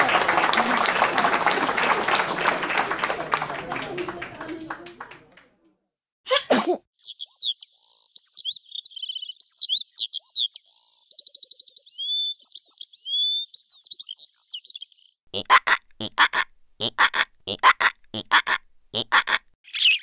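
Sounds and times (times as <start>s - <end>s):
songbird singing: 7.0s - 15.2s.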